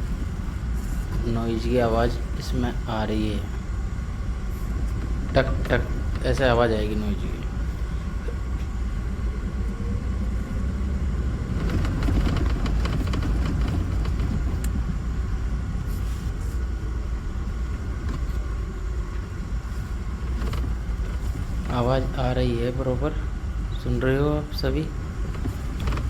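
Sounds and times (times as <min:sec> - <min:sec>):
road and engine rumble: 0:00.0 - 0:26.0.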